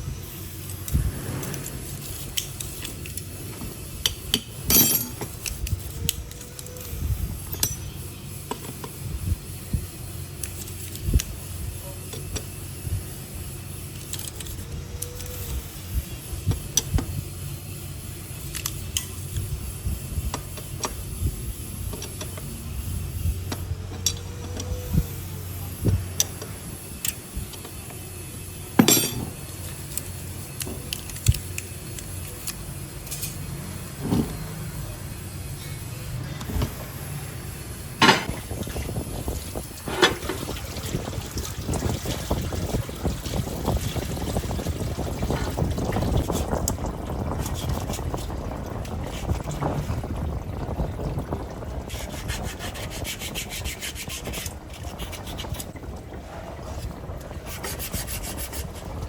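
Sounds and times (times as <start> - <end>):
steady low hum: 0.0 - 59.0
metallic clinks of hand tools: 4.7 - 5.3, 28.8 - 29.3.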